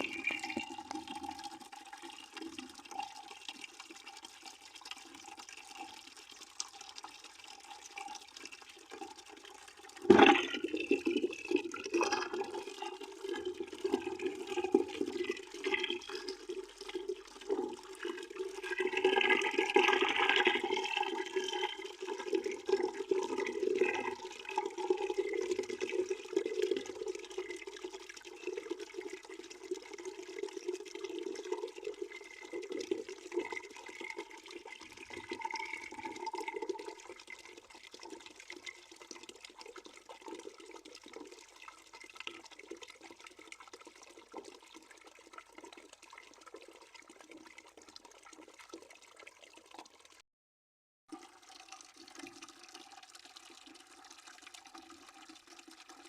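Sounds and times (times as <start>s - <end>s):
tap water pouring into bucket: 0.0s - 50.2s, 51.1s - 56.0s.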